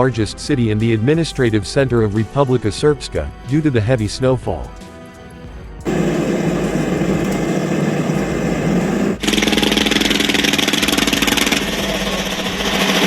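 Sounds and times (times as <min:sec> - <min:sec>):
engine running: 0:05.9 - 0:13.0
harsh fast-pulsing engine: 0:05.9 - 0:13.0.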